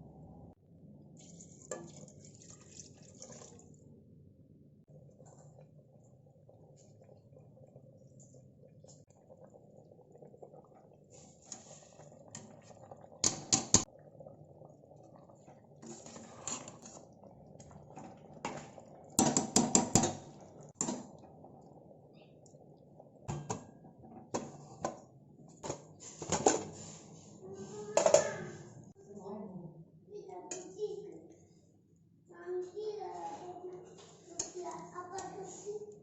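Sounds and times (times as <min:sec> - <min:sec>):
metal utensils clinking on pot: 0:15.9 - 0:17.0.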